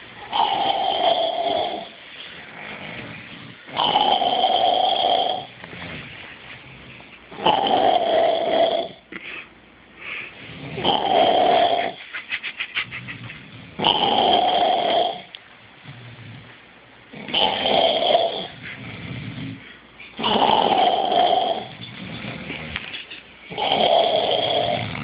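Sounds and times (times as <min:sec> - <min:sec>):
loud snoring: 0:00.2 - 0:06.1, 0:07.3 - 0:09.0, 0:10.5 - 0:12.0, 0:13.4 - 0:15.3, 0:17.1 - 0:22.8, 0:23.5 - 0:25.0.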